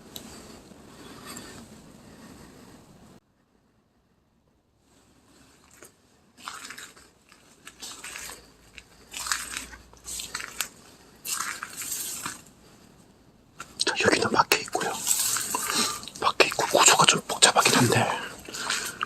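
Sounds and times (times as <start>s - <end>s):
debris crunching underfoot: 5.6s - 12.5s, 13.6s - 19.0s.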